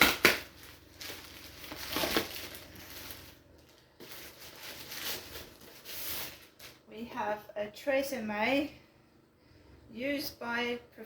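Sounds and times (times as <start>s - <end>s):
packaging rustling and crinkling: 0.0s - 6.9s.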